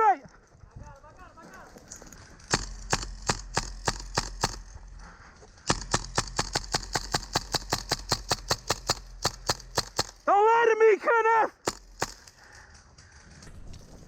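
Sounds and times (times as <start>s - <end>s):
airsoft gun rapid shots: 2.5s - 4.8s, 5.7s - 10.3s, 11.6s - 12.5s.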